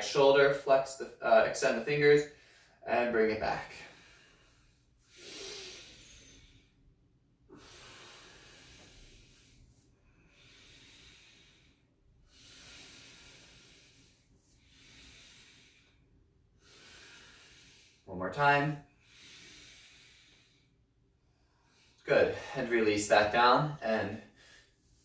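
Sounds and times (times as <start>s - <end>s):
person breathing deeply: 3.7s - 6.9s, 7.5s - 18.1s, 18.8s - 22.7s, 24.2s - 25.0s.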